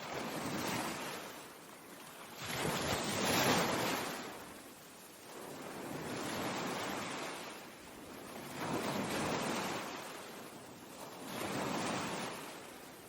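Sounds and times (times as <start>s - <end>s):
ocean waves breaking: 2.3s - 4.6s.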